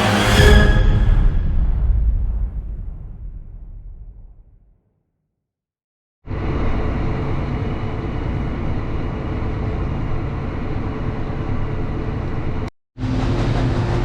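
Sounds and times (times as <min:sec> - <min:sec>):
heavy farm machinery running: 0:13.0 - 0:14.0.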